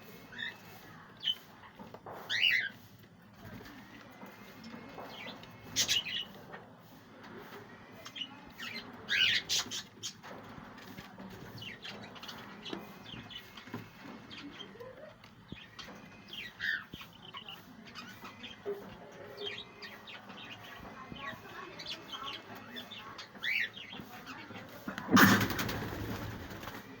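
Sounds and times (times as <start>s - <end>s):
budgerigars chirping: 5.2s - 6.3s, 8.1s - 10.2s, 15.5s - 20.8s.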